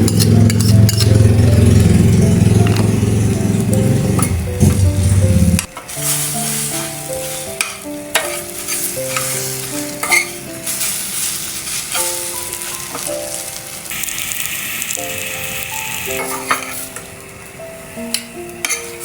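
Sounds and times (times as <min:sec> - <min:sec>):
soft background music: 0:00.0 - 0:19.0
food sizzling in a pan: 0:04.7 - 0:19.0
utensil knocking pan: 0:05.6 - 0:10.8.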